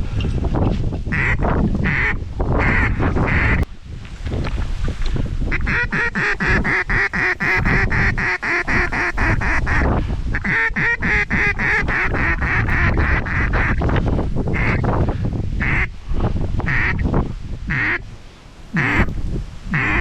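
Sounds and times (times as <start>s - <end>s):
wind rumble on microphone: 0.0s - 20.0s
duck call quacks: 1.1s - 3.6s, 5.5s - 13.8s, 14.5s - 14.8s, 15.6s - 15.9s, 16.7s - 17.0s, 17.7s - 18.0s, 18.8s - 19.1s, 19.7s - 20.0s.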